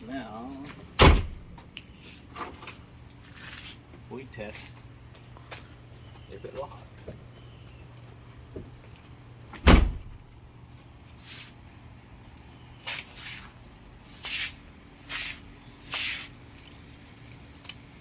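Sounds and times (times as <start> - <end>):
van door shutting thud: 1.0 - 1.5, 9.6 - 10.2.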